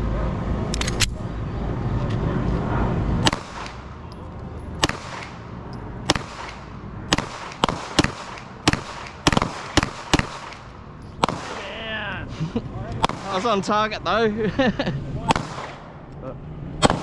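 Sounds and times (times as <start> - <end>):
low rumble: 0.0 - 17.0
pistol shots: 3.2 - 4.0, 4.8 - 11.8, 12.9 - 13.6, 15.2 - 16.0, 16.8 - 17.0.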